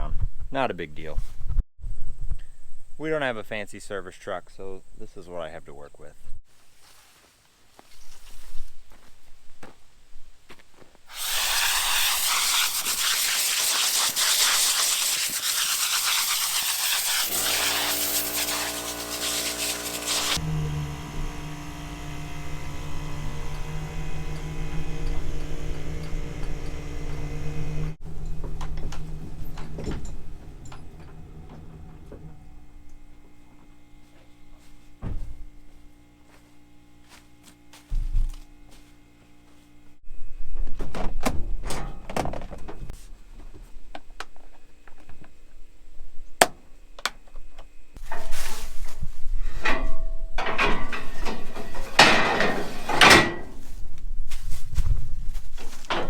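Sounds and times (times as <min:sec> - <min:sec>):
loud rushing hiss: 0:11.1 - 0:20.4
engine humming: 0:17.3 - 0:37.5.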